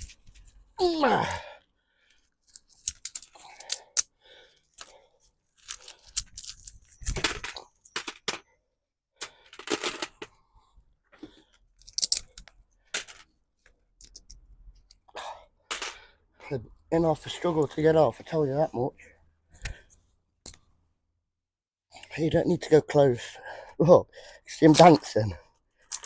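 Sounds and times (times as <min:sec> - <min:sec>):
coins clinking and clattering: 0:05.6 - 0:08.4, 0:09.2 - 0:10.3, 0:11.8 - 0:13.3, 0:15.7 - 0:16.0.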